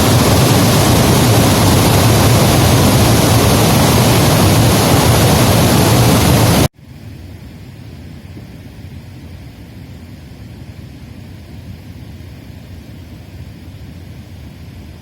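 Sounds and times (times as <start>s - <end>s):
water rushing over a dam: 0.0s - 6.7s.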